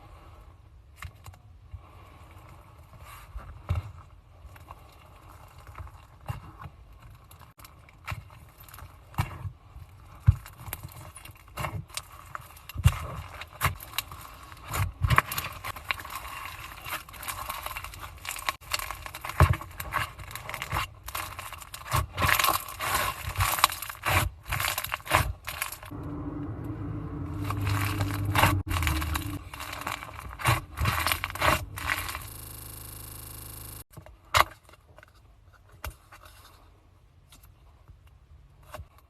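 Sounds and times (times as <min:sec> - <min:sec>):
low steady hum: 0:25.9 - 0:33.8.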